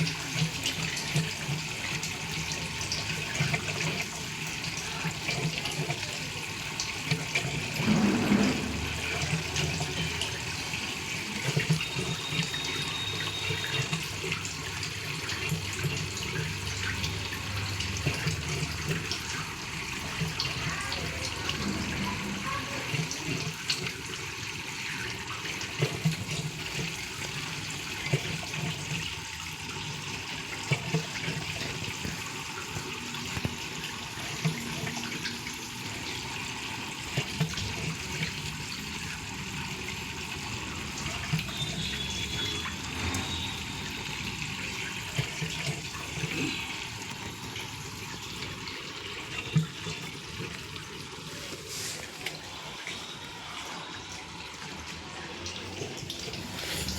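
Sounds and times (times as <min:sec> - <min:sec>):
washing machine water splashing: 0:00.0 - 0:56.9
washing machine low thumps: 0:07.4 - 0:10.2, 0:20.8 - 0:23.2.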